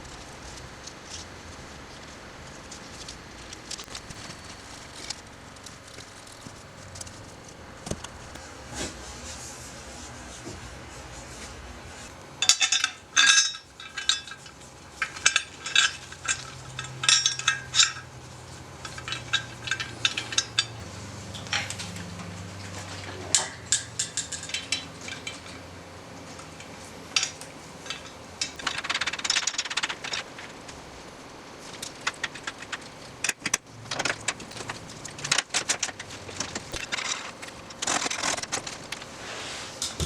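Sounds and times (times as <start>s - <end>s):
metal tools clinking and clattering: 12.4s - 30.5s.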